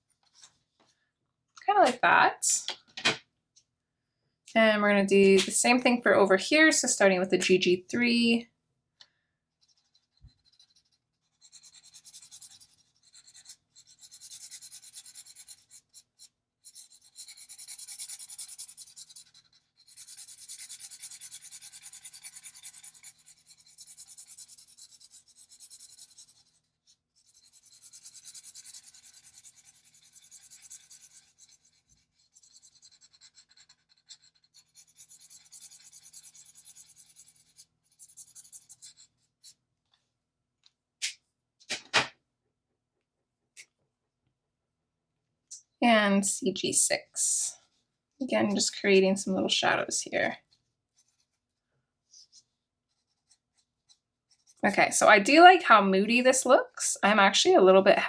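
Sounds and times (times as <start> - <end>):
marker nib rubbing on paper: 9.6 - 39.6, 49.6 - 57.1.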